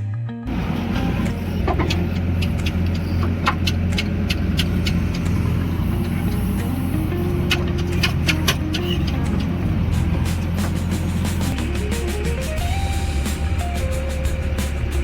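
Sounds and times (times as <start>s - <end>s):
sharp clicks and knocks: 0.5s - 6.7s, 7.3s - 12.6s
diesel engine droning: 0.5s - 15.0s.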